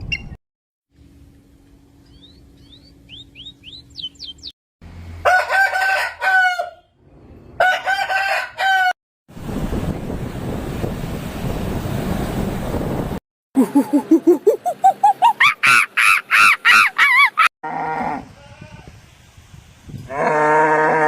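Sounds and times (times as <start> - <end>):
rooster crowing: 5.2 - 6.9, 7.6 - 9.0.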